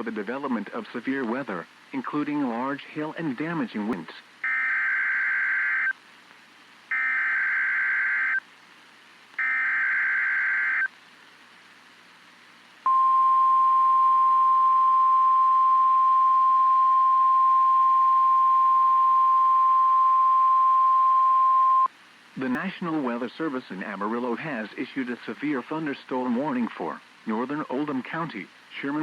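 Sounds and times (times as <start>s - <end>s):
steady warning alarm tone: 6.9s - 8.4s, 9.4s - 10.9s.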